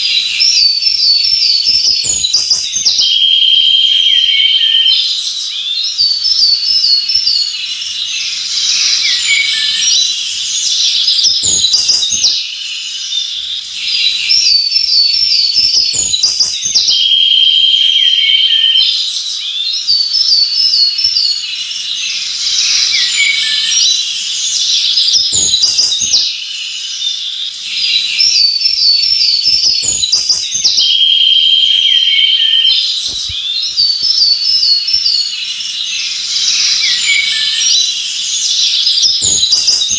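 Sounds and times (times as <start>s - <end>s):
birds chirping and singing: 0.0s - 39.9s.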